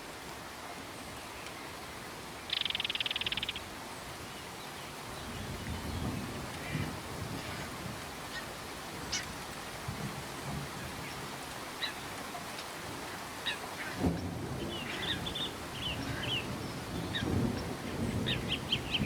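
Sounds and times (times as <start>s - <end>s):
steady rain: 0.0s - 19.0s
songbirds chirping: 11.8s - 19.0s.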